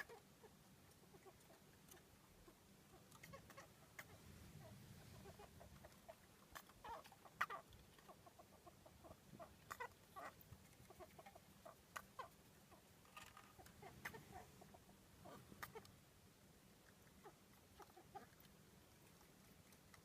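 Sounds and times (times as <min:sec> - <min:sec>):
mouse sneezing and chirping: 0:00.0 - 0:00.3, 0:01.2 - 0:12.9, 0:15.2 - 0:15.9.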